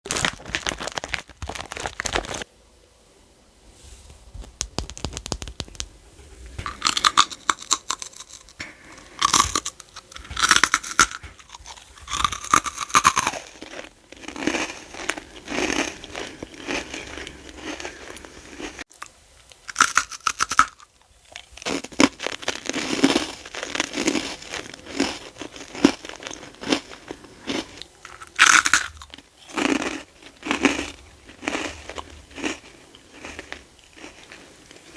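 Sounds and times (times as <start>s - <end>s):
crunching and chewing candy: 0.0s - 2.4s, 6.5s - 34.9s.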